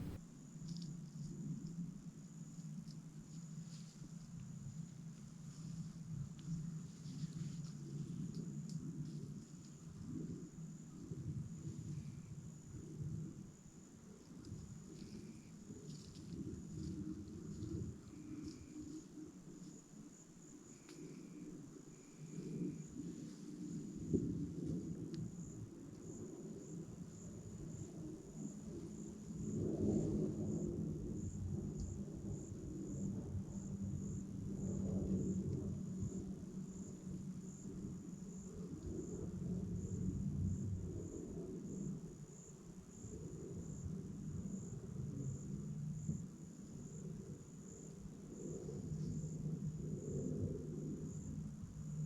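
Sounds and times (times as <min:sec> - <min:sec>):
insect chirping: 0:00.0 - 0:00.2, 0:40.5 - 0:52.0.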